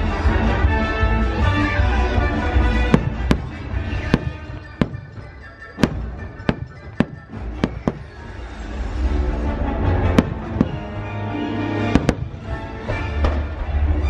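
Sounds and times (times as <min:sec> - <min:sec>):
show music: 0:00.0 - 0:14.0
fireworks bangs: 0:02.2 - 0:08.6, 0:10.0 - 0:11.1, 0:11.8 - 0:13.6.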